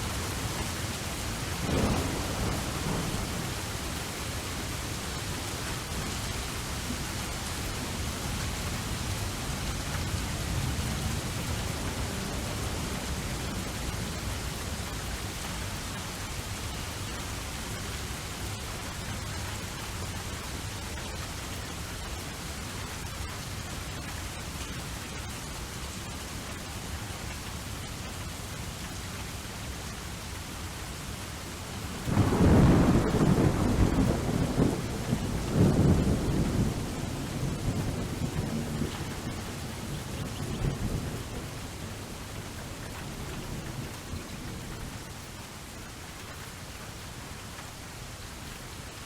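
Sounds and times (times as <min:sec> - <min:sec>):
rain falling: 0:00.0 - 0:49.0.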